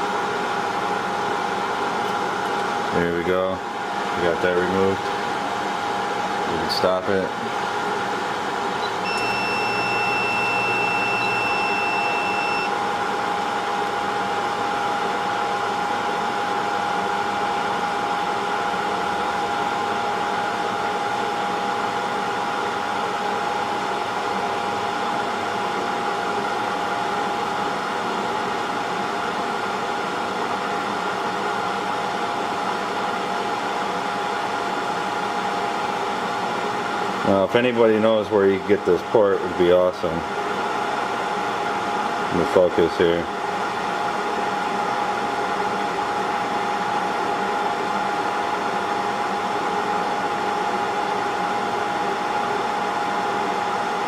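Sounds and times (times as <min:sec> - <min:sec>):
thin high tone: 0:08.8 - 0:12.7.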